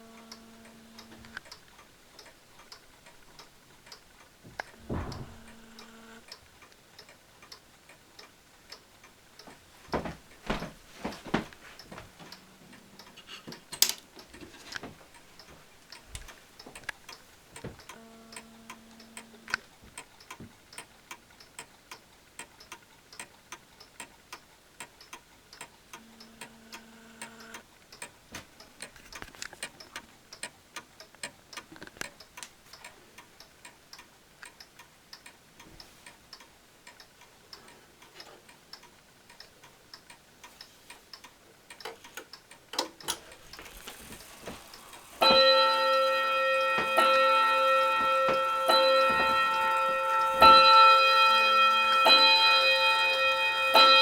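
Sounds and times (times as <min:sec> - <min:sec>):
mechanical clocks ticking: 0:00.0 - 0:10.5, 0:11.1 - 0:54.0
sharp knock: 0:04.9 - 0:05.5.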